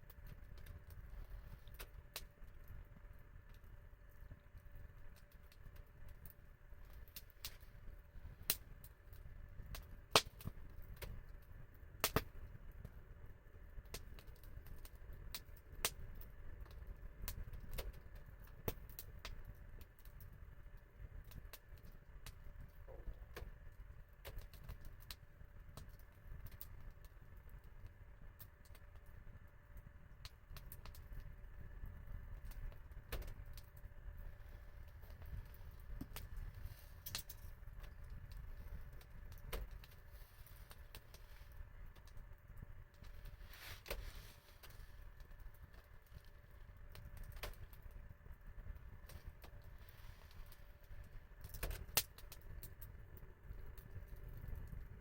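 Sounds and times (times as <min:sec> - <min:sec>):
low steady rumble: 0:00.0 - 0:55.0
wood fire crackling: 0:00.0 - 0:55.0
sharp fire pops: 0:08.4 - 0:13.0, 0:30.2 - 0:53.0.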